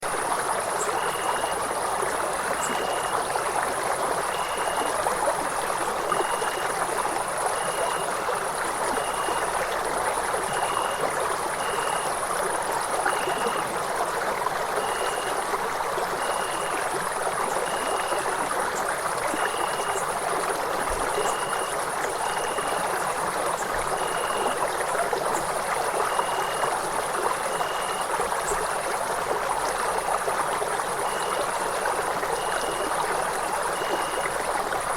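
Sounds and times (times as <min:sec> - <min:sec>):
stream flowing: 0:00.0 - 0:34.9
insect chirping: 0:00.1 - 0:28.8, 0:30.4 - 0:34.9.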